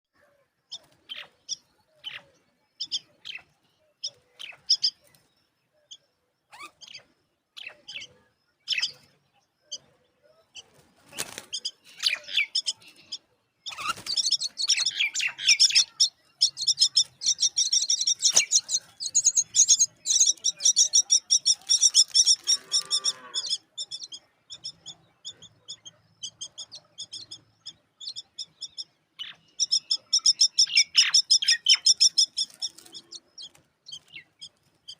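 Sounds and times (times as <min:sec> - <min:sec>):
bird chicks chirping: 0:00.2 - 0:34.9.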